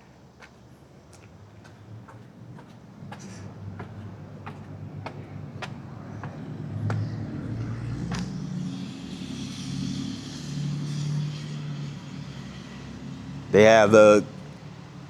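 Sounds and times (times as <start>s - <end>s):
car passing by: 1.7s - 15.0s.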